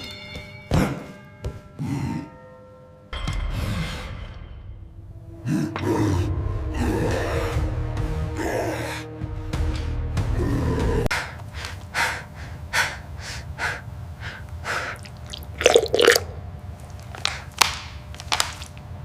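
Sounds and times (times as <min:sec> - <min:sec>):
heavy rapid breathing and gasping: 0:10.8 - 0:16.1, 0:17.0 - 0:17.6.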